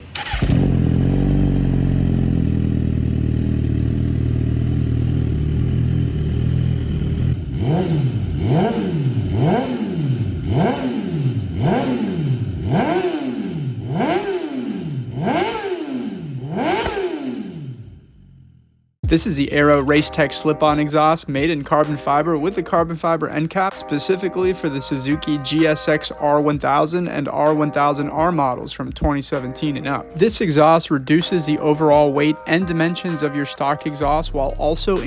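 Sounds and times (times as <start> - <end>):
motorcycle engine idling: 0.0 - 23.7
motorcycle engine revving: 0.0 - 33.3.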